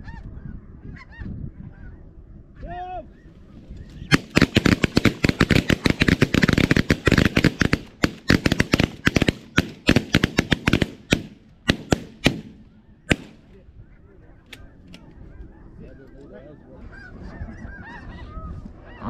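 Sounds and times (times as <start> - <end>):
shotgun fire: 4.1 - 13.5.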